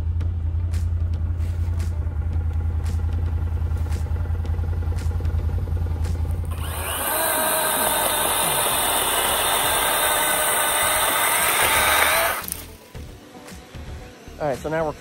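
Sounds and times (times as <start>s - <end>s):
vehicle engine rumbling: 0.0s - 13.2s
hissing whir with tones: 6.4s - 15.0s.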